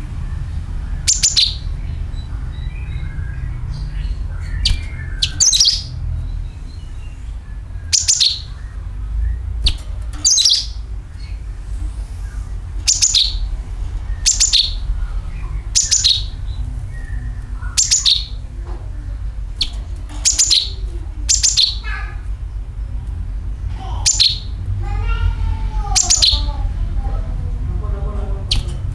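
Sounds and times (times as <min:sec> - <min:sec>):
steady low hum: 0:00.0 - 0:28.9
bird calling: 0:01.0 - 0:11.4, 0:12.8 - 0:18.5, 0:19.6 - 0:22.7, 0:23.8 - 0:24.6, 0:25.8 - 0:26.8.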